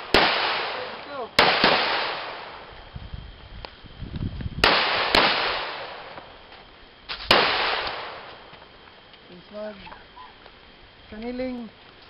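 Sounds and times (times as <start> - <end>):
pistol shots with echo: 0.0 - 2.6, 4.6 - 6.2, 7.3 - 8.3.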